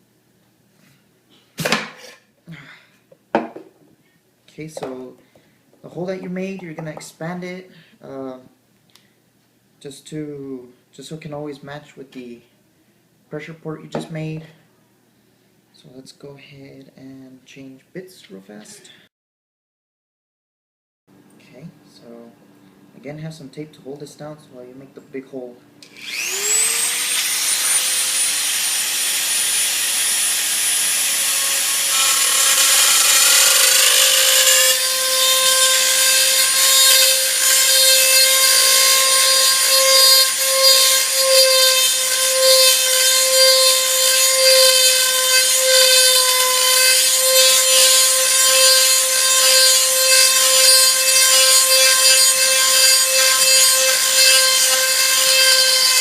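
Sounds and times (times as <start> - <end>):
electric drill whining: 25.8 - 56.0.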